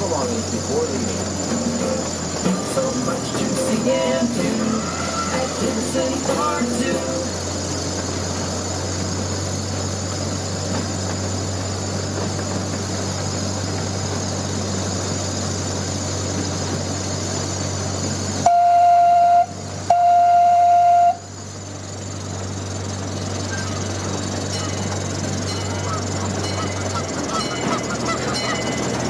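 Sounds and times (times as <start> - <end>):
train rumbling: 0.0 - 29.0
train whistle blasts: 4.5 - 5.8, 18.4 - 21.3.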